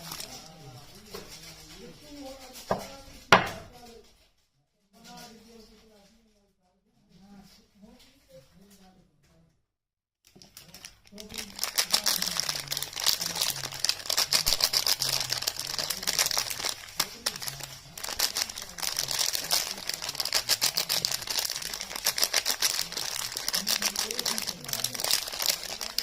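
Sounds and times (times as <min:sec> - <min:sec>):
wrapper tearing: 0:00.0 - 0:00.8, 0:10.3 - 0:26.0
packaging wrapper crinkling: 0:00.0 - 0:03.0, 0:10.3 - 0:26.0.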